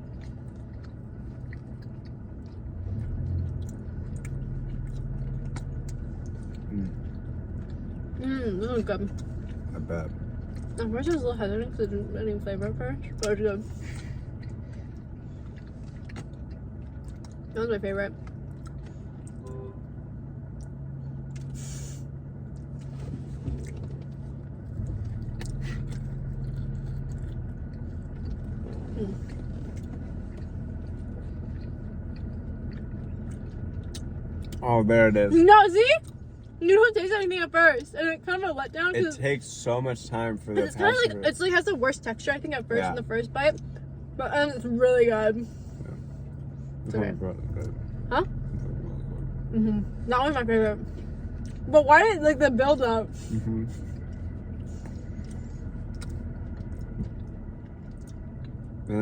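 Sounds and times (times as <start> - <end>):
person chewing: 0.0 - 8.2, 9.0 - 10.8, 13.1 - 17.6, 18.2 - 19.6, 22.5 - 34.6, 53.7 - 58.7
low hum inside car: 0.0 - 59.0
low steady rumble: 0.0 - 59.0
crunchy food eating: 22.6 - 34.6.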